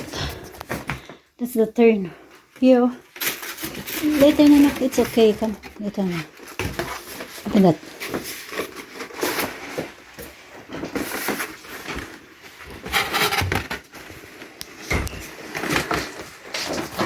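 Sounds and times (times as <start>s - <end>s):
paper wrapping rustling: 2.3s - 17.0s
cardboard box opening: 10.8s - 14.2s.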